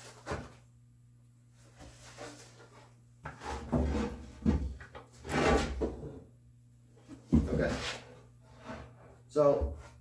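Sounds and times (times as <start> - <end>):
wooden board scraping: 1.8 - 6.1.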